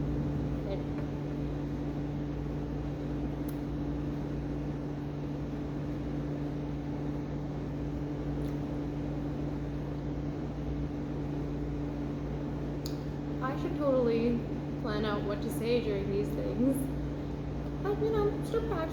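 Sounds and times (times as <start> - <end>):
steady mechanical hum: 0.0 - 18.9.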